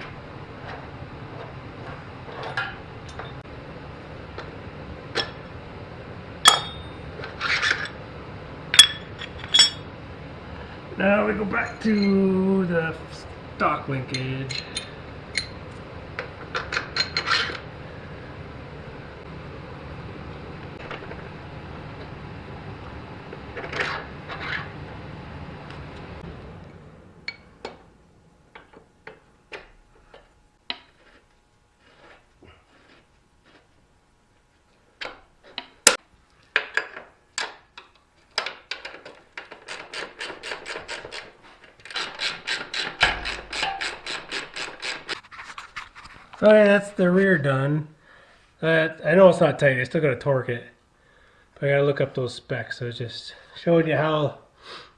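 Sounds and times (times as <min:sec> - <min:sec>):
metal parts clinking: 0:08.8 - 0:09.8, 0:14.1 - 0:15.6
metal scraping rub: 0:16.5 - 0:17.7, 0:30.8 - 0:33.8.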